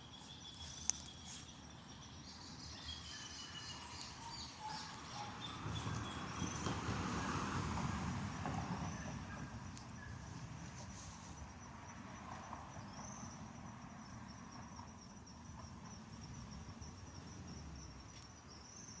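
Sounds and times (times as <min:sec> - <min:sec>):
high-pitched insect trill: 0:08.7 - 0:19.0.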